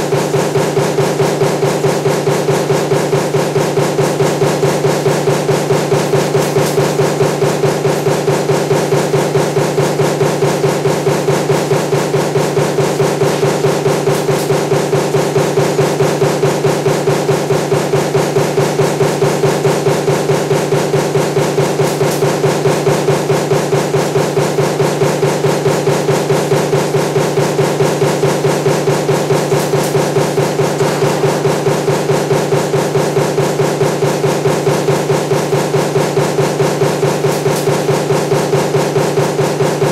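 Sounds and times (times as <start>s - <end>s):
power press punching: 0.0s - 39.9s
steady machine hum: 0.0s - 39.9s.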